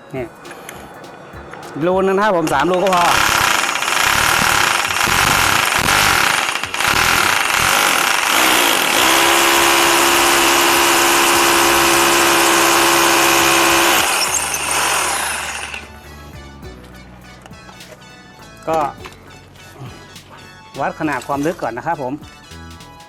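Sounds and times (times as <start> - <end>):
hammer drill drilling into tile: 2.8 - 15.9.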